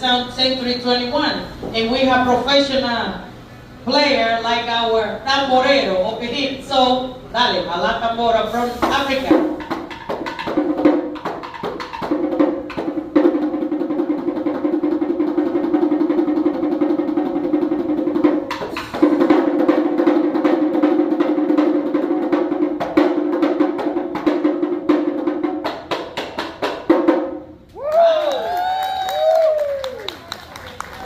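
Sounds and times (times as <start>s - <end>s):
two-headed drum played fast: 9.0s - 27.4s.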